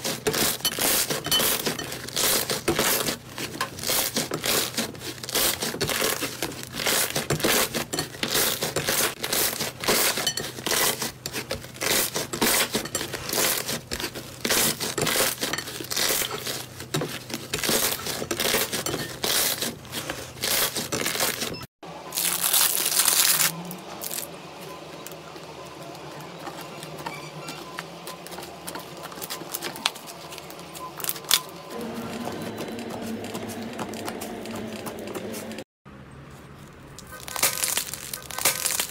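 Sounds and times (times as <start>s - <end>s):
slime crackling and popping: 37.0s - 38.9s.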